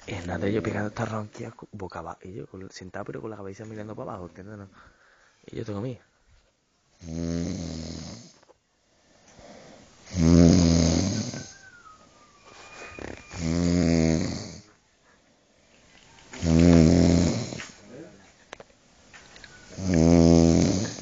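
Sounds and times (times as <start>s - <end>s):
man snoring heavily: 7.0s - 8.4s, 9.5s - 11.6s, 13.0s - 14.7s, 16.4s - 17.7s, 19.7s - 21.0s.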